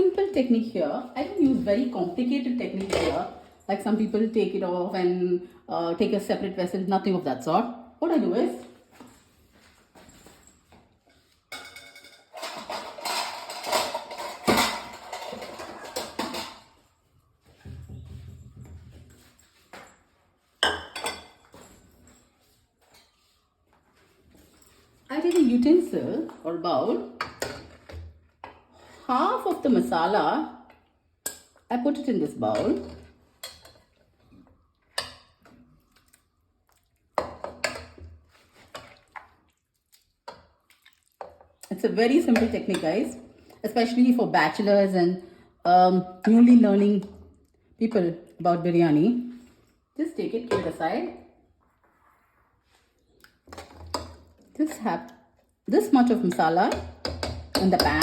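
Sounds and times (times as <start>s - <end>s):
utensils and dishes clattering: 11.1s - 16.9s, 20.6s - 22.2s.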